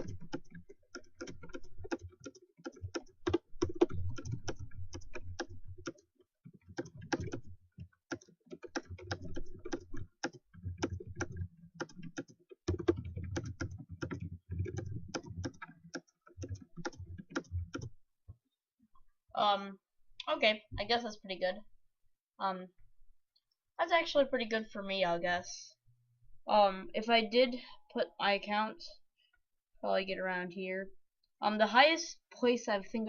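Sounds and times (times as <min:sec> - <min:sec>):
fast keyboard typing: 0:00.0 - 0:18.0.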